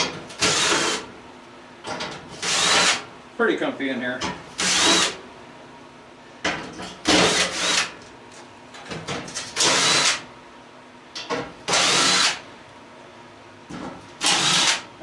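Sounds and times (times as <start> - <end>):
power drill running in bursts: 0.4 - 1.0, 2.4 - 3.0, 4.6 - 5.2, 7.1 - 7.9, 9.6 - 10.2, 11.7 - 12.4, 14.2 - 14.9.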